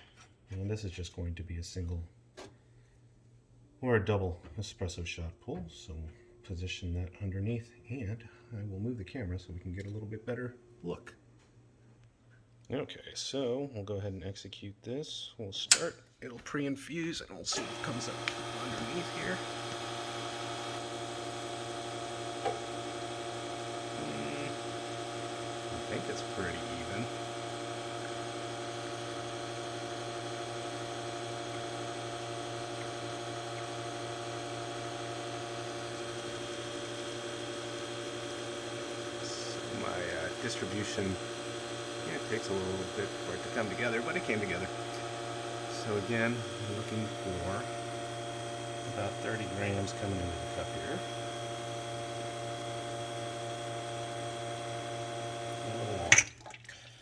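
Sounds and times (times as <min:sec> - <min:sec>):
sharp click: 0:15.6 - 0:16.0
espresso machine pump humming: 0:17.5 - 0:56.3.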